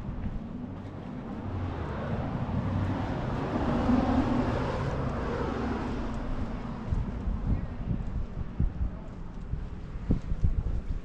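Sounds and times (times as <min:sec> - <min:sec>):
vehicle driving past: 0:00.9 - 0:07.0.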